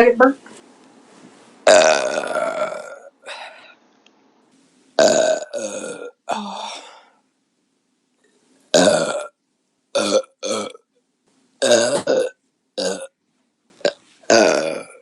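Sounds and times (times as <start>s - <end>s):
woman burping: 1.7s - 3.5s, 5.0s - 7.0s, 8.7s - 9.3s, 10.0s - 10.8s, 11.6s - 13.1s, 13.8s - 15.0s.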